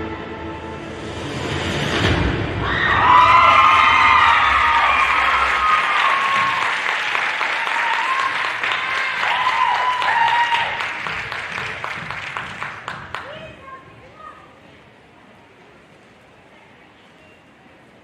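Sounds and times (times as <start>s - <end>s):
audience whooping and shouting: 2.6s - 11.1s
audience clapping: 3.2s - 13.5s.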